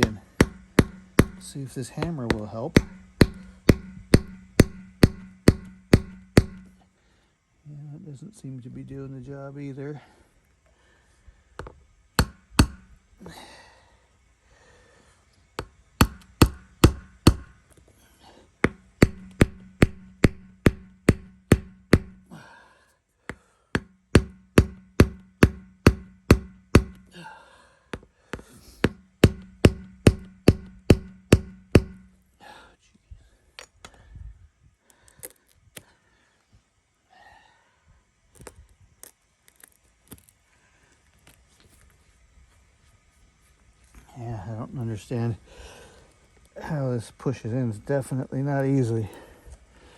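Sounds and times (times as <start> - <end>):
hammer tapping on metal tool: 0.0 - 6.8, 11.6 - 13.0, 15.6 - 17.6, 18.6 - 22.3, 23.8 - 27.1, 28.8 - 32.2.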